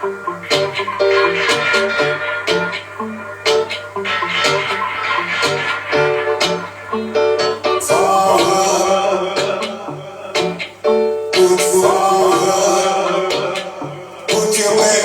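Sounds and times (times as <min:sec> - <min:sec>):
person singing: 0:07.7 - 0:15.0.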